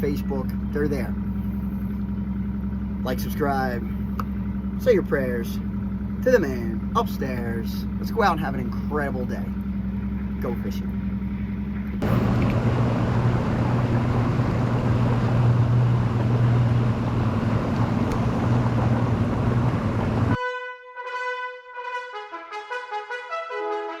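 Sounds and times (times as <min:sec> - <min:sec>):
boat motor humming: 0:00.0 - 0:20.6
music with horn-like notes: 0:20.4 - 0:24.0.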